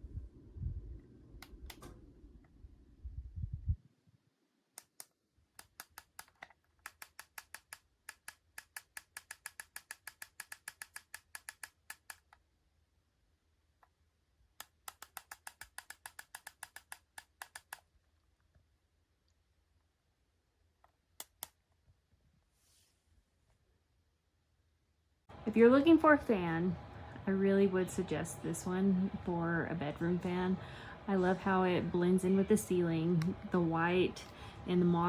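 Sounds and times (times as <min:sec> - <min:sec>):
rapid evenly spaced clicking: 0:04.8 - 0:12.3, 0:14.6 - 0:17.9.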